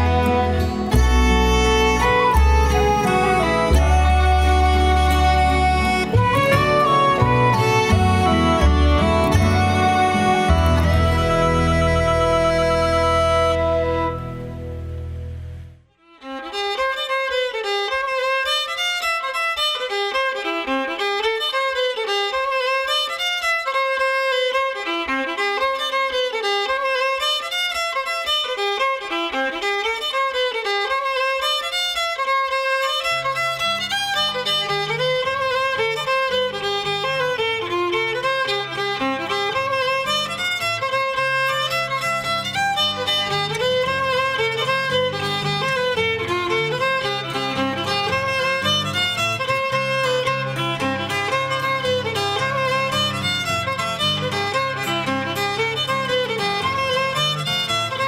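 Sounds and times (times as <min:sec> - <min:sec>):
lower accompaniment: 0:00.0 - 0:15.8
fiddle tune: 0:00.0 - 0:58.0.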